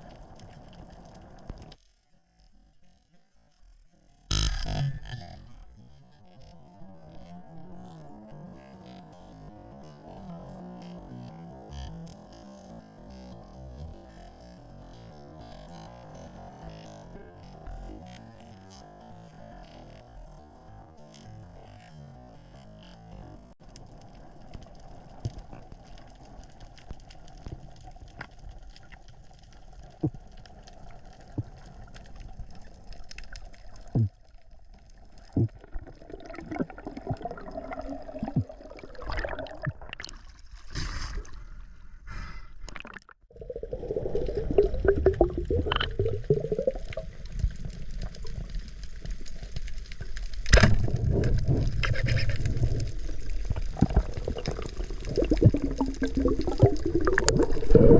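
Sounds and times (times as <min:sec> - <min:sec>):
water gurgling and bubbling: 0:34.8 - 0:40.4, 0:42.7 - 0:49.5, 0:50.4 - 0:57.9.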